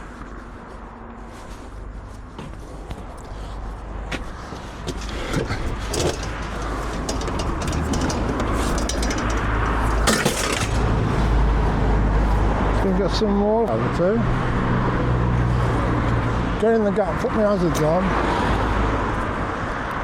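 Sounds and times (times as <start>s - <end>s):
vehicle engine and road rumble: 0.0s - 20.0s
clicks and rattles: 4.4s - 11.3s.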